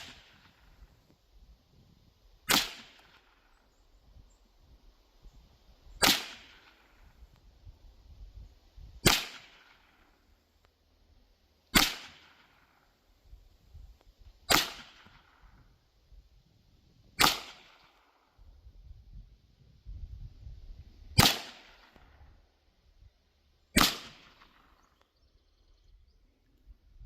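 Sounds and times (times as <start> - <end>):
air pistol shots: 0.0 - 0.6, 2.4 - 3.4, 6.0 - 6.9, 9.0 - 9.9, 11.7 - 12.6, 14.5 - 15.4, 17.2 - 18.0, 21.2 - 22.0, 23.8 - 24.7.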